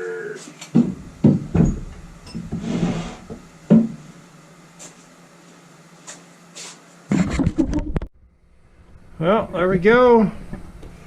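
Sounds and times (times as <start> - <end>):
heavy knock: 0.8 - 2.1
vise scraping on workbench: 2.4 - 3.4.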